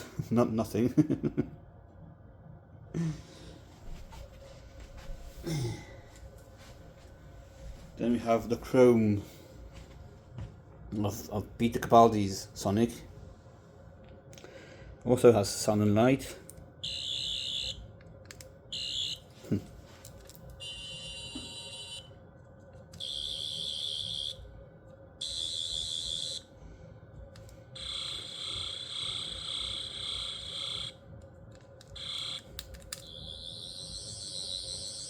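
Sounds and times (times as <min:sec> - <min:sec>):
toy warbling electronic buzz: 0:16.8 - 0:17.8, 0:18.7 - 0:19.2, 0:20.6 - 0:22.1, 0:23.0 - 0:24.4, 0:25.2 - 0:26.5, 0:27.8 - 0:31.0, 0:32.0 - 0:35.0.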